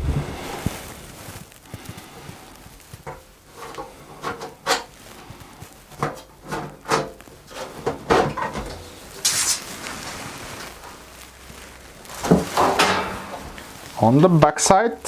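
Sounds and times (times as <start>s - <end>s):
hissing rustle: 0.0s - 15.0s
knocks and scrapes of pc case: 3.0s - 4.9s, 5.9s - 11.0s, 12.1s - 13.8s.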